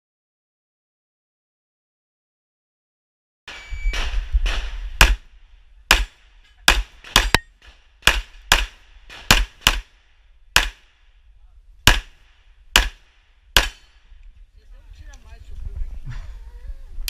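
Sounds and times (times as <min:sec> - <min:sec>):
pistol shots: 0:03.5 - 0:05.2, 0:05.9 - 0:10.0, 0:10.6 - 0:11.0, 0:11.9 - 0:14.1.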